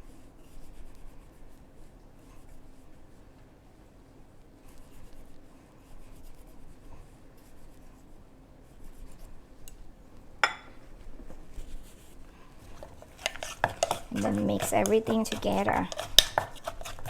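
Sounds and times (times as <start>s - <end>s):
rubbing and scraping: 11.5s - 17.0s.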